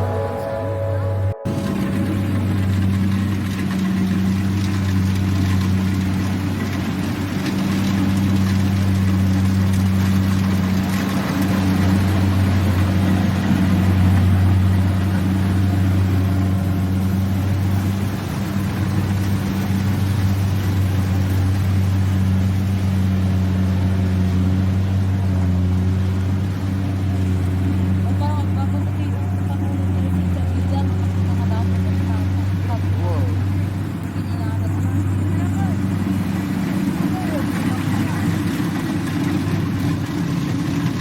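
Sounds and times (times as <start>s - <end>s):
harvester engine humming: 0.0s - 41.0s
machinery noise: 0.0s - 41.0s.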